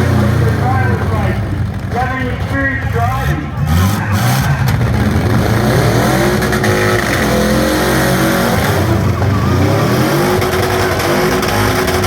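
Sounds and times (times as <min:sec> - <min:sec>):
car engines revving: 0:00.0 - 0:12.0.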